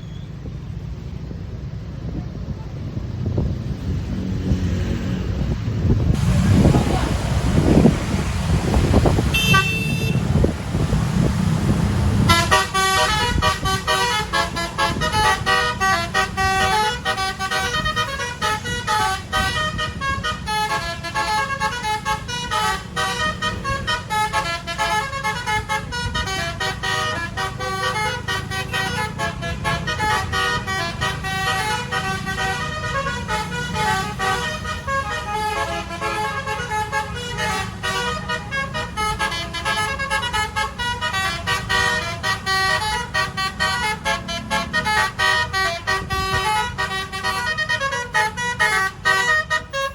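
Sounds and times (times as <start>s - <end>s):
engine and road rumble: 0.0s - 49.9s
multi-tone air horn tune: 8.6s - 10.5s, 12.2s - 49.9s.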